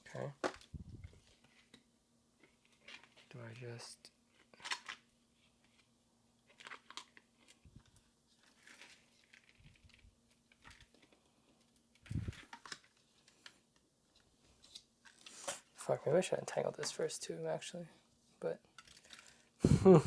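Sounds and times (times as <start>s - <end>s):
plastic clicks and rustles: 4.3s - 15.7s, 18.7s - 19.5s.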